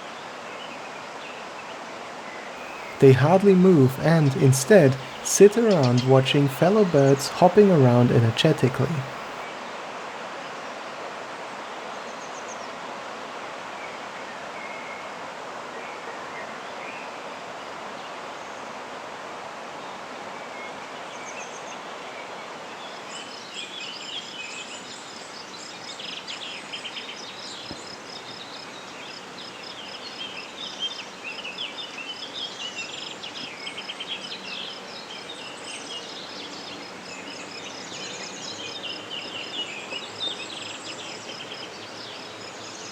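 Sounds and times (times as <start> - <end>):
small birds chirping: 2.7 - 9.4
steady background noise: 2.7 - 9.4.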